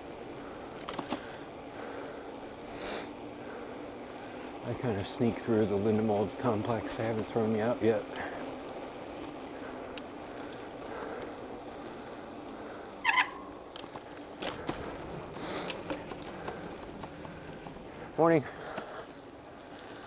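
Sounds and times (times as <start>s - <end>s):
bicycle tyres rolling: 0.0s - 20.0s
loud high chirp: 13.0s - 13.4s.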